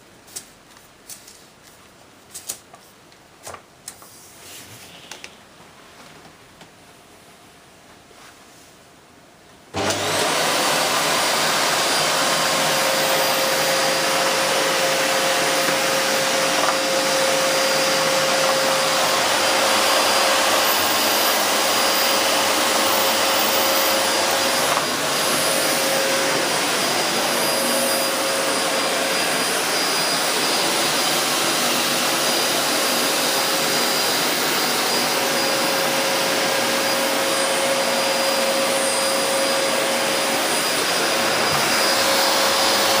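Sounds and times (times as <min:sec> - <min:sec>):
vacuum cleaner running: 0:09.7 - 0:43.0.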